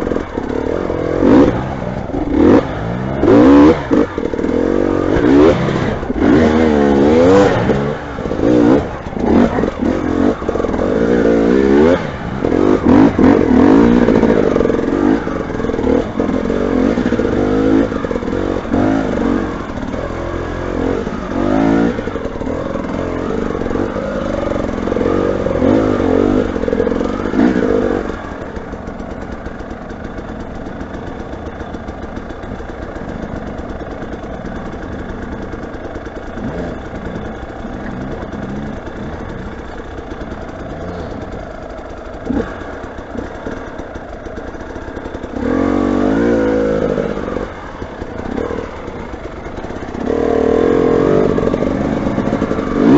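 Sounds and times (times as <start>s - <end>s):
motorcycle engine idling: 0.0s - 52.9s
motorcycle engine revving: 0.0s - 52.9s.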